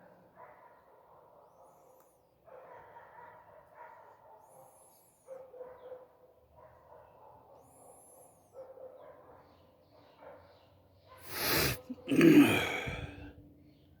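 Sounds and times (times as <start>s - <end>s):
man coughing: 11.3s - 13.3s.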